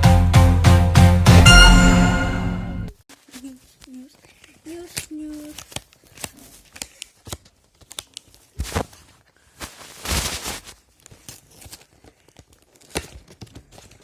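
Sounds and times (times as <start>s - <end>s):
packaging rustling tear: 3.1s - 14.0s.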